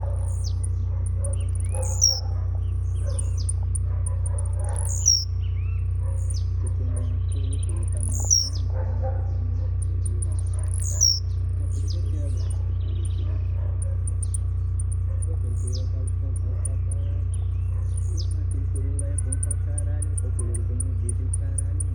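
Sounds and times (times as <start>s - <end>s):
bird calling and twittering: 0.0s - 21.9s
steady low hum: 0.0s - 21.9s.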